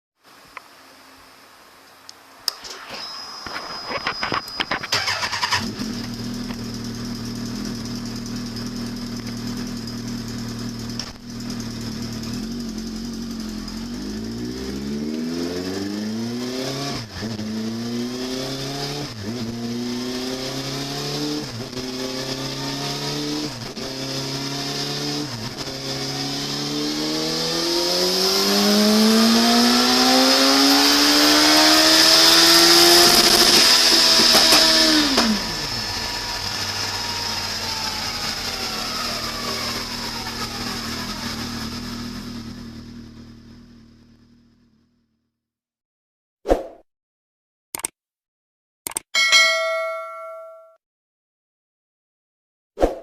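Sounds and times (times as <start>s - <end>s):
car engine idling and revving: 4.4s - 45.2s.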